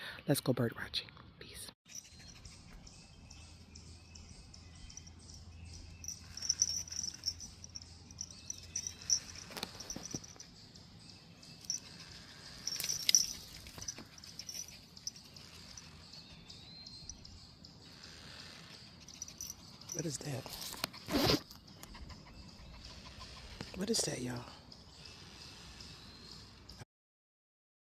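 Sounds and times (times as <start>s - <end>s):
insects chirping: 4.5s - 20.8s.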